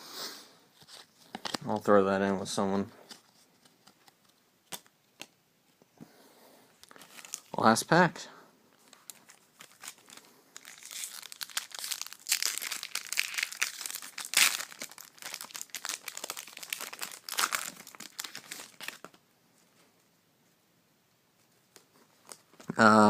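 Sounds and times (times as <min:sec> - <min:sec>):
foil pack tearing and crinkling: 0:09.1 - 0:19.1.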